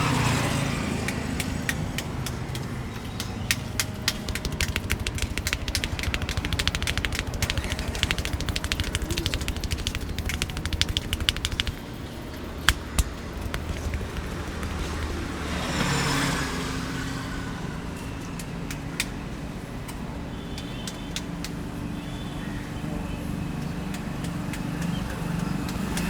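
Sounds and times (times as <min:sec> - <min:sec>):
low road traffic: 0:00.0 - 0:20.2
hands tapping on a head: 0:01.4 - 0:15.6
sharp clicks: 0:03.2 - 0:15.5.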